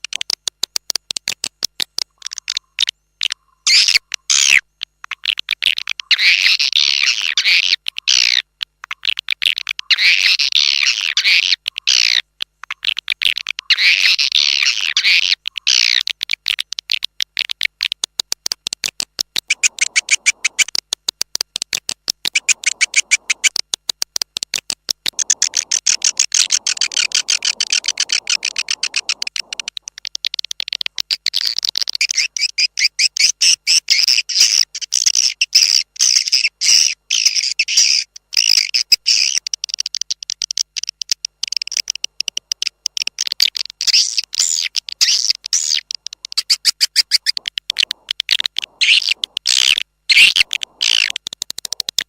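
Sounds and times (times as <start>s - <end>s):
fast dry clicks: 0.0s - 52.0s
swiftlet twittering calls: 2.2s - 4.6s, 5.2s - 8.4s, 9.0s - 16.0s, 19.5s - 20.8s, 22.2s - 23.5s, 25.1s - 30.2s, 30.8s - 52.0s.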